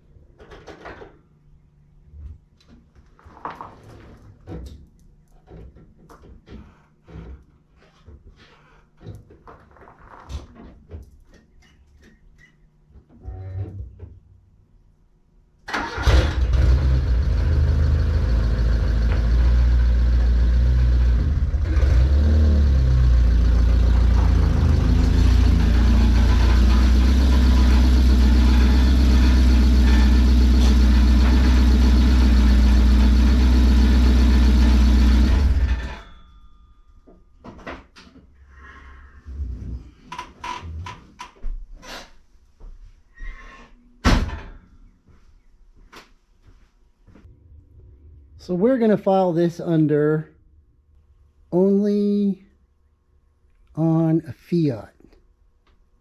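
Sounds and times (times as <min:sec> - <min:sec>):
car engine cranking and running: 0:15.7 - 0:36.0.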